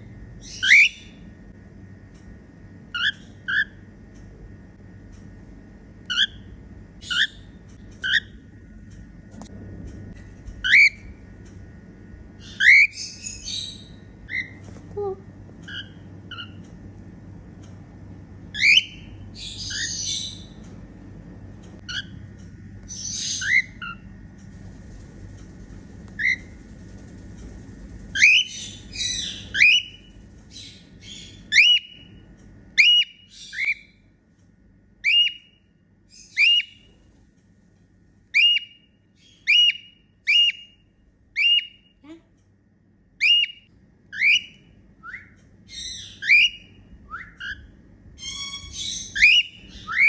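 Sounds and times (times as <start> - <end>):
cockatiel whistles: 28.1 - 30.0, 36.3 - 36.8, 38.3 - 38.8, 39.4 - 40.7, 41.4 - 41.8, 43.2 - 47.6, 48.3 - 50.0.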